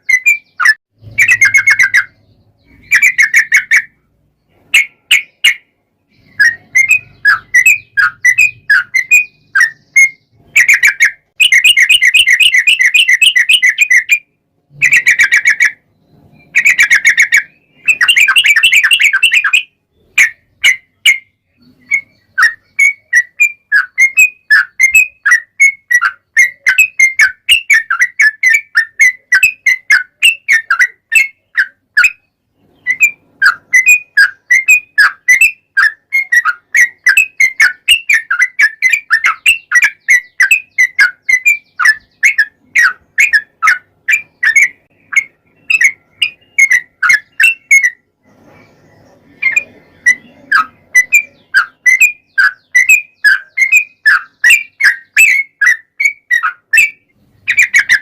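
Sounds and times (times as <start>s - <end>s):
bulbul chirping and trilling: 0.0s - 48.1s, 48.7s - 58.0s.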